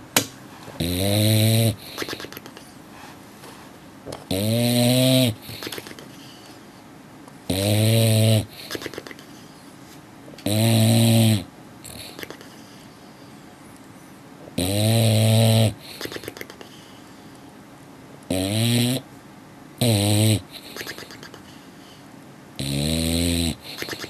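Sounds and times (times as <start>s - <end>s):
dog snoring loudly: 0.8s - 2.3s, 4.3s - 5.9s, 7.5s - 9.0s, 10.4s - 12.4s, 14.6s - 16.2s, 18.3s - 19.1s, 19.8s - 21.1s, 22.6s - 24.0s.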